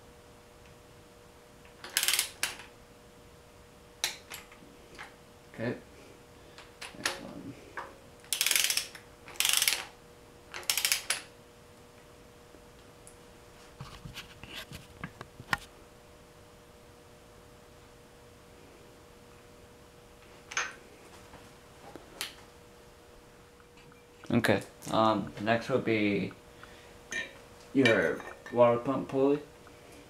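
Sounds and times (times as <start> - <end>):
torque wrench ratchet clicking: 1.8 - 2.5, 8.3 - 9.9, 10.6 - 11.2.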